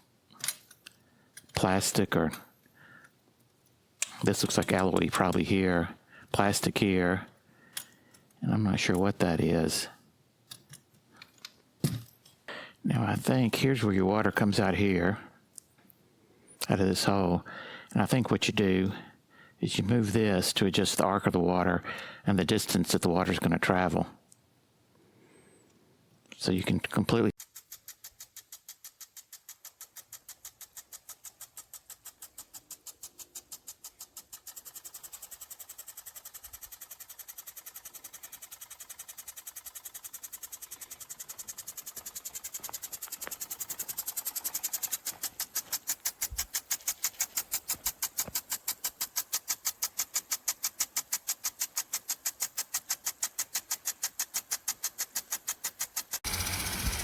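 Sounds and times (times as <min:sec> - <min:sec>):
impact sprinkler ticking: 0:27.4 - 0:57.0
spray hissing: 0:34.4 - 0:57.0.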